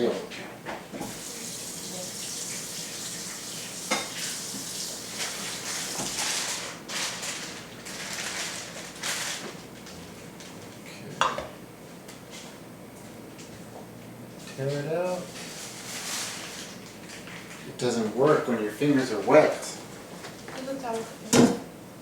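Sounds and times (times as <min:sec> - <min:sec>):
dishes knocking: 0:11.2 - 0:11.5.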